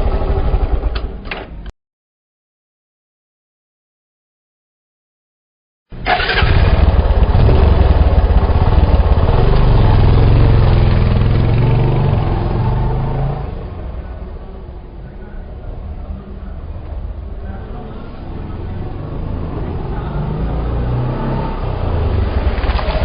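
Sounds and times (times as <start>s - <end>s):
motorcycle engine revving and idling: 0.0s - 1.2s, 6.0s - 23.0s.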